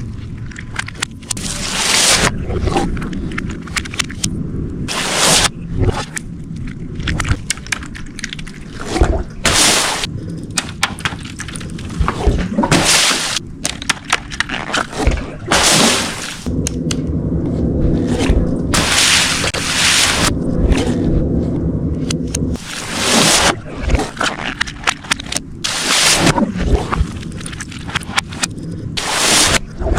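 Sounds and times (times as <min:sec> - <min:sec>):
water balloons bursting and splashing: 0:08.8 - 0:11.2, 0:12.0 - 0:16.5, 0:18.7 - 0:20.4, 0:22.6 - 0:28.4.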